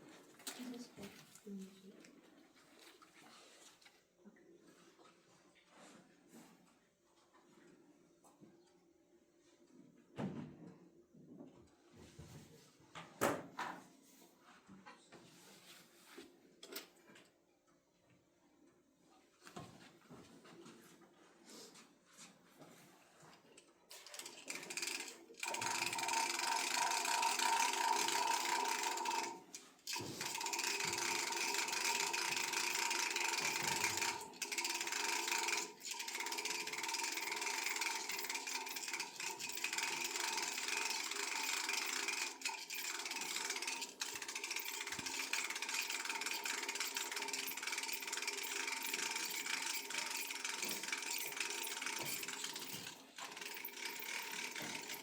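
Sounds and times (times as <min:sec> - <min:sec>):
hand winder gear whirring: 0:24.2 - 0:55.0.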